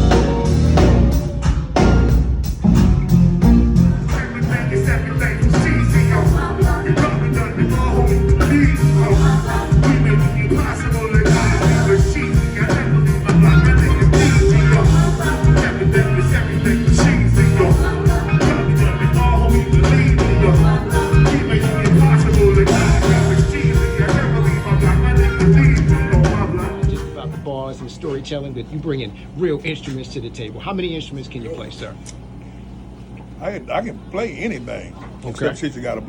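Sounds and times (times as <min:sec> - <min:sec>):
music with bass and guitar: 0:00.0 - 0:27.9.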